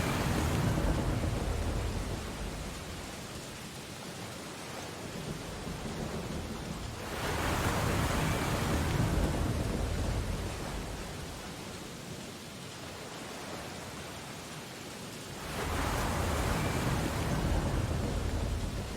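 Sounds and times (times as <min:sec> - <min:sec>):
wave breaking: 0:00.0 - 0:03.7, 0:04.8 - 0:11.8, 0:15.3 - 0:18.9.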